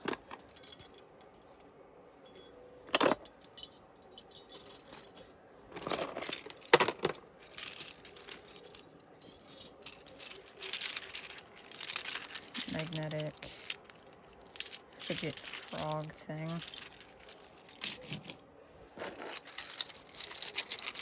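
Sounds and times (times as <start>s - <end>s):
metal puzzles jangling and clinking: 0.0s - 1.7s, 2.3s - 18.4s, 19.0s - 21.0s.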